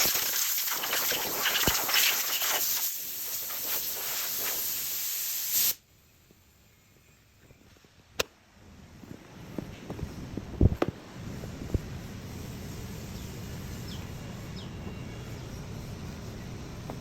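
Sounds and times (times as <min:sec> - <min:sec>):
spraying hiss: 0:00.0 - 0:05.8.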